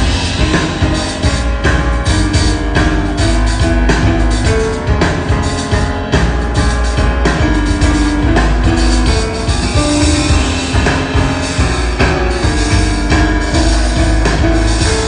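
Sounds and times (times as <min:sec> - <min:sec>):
double bass: 0:00.0 - 0:15.0
drum kit with cymbals: 0:00.0 - 0:15.0
piano chords: 0:00.0 - 0:15.0.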